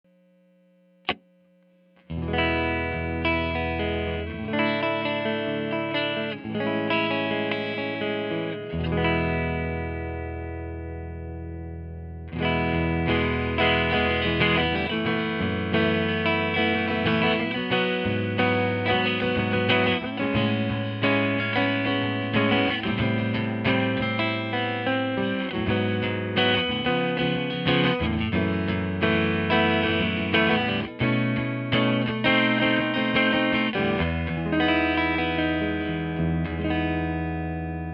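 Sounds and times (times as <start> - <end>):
clean electric guitar chords: 2.0 - 37.9.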